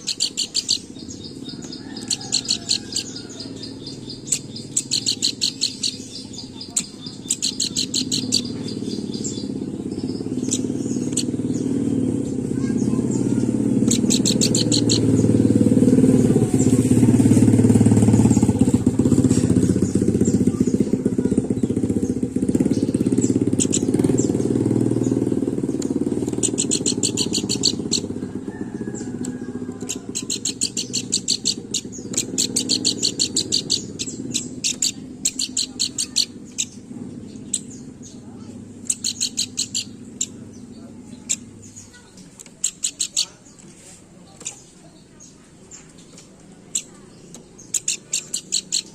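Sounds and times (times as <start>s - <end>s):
bird singing rapid high notes: 0.0s - 43.6s, 44.3s - 48.9s
low engine rumble: 0.0s - 48.9s.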